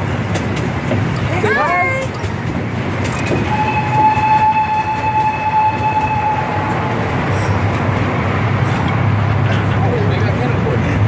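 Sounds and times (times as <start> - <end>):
train horn long blast: 3.5 - 6.8.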